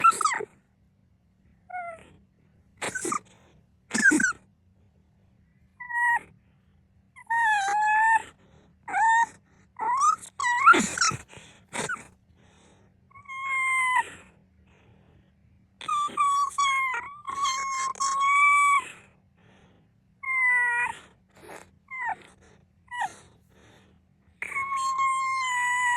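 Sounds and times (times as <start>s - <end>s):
high-pitched cries: 0.0s - 0.5s, 3.9s - 4.4s, 5.8s - 6.3s, 7.2s - 12.0s, 13.1s - 14.3s, 15.8s - 19.1s, 20.2s - 23.3s, 24.4s - 25.9s
small pet sneezing: 2.8s - 4.4s, 10.5s - 12.1s.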